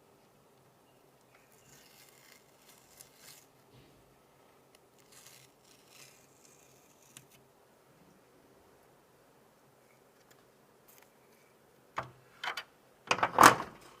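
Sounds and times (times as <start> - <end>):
packaging rustling and scraping: 1.4 - 4.0.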